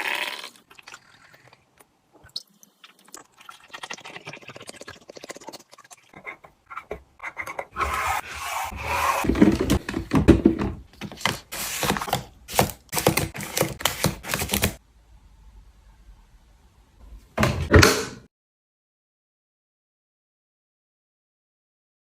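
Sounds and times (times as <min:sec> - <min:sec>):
packaging rustling: 0:10.9 - 0:14.8.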